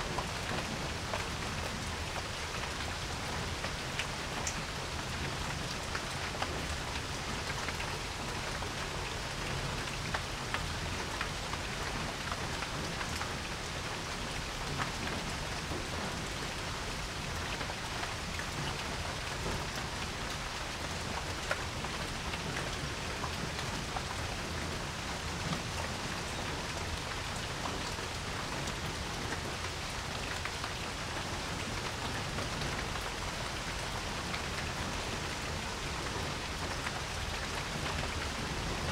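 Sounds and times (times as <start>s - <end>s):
rain hissing on a porch: 0.0s - 38.9s.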